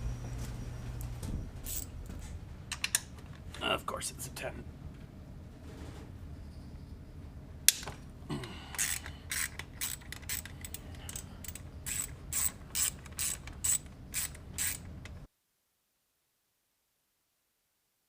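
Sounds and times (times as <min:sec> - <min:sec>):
hand ratchet clicking: 0:08.7 - 0:15.2.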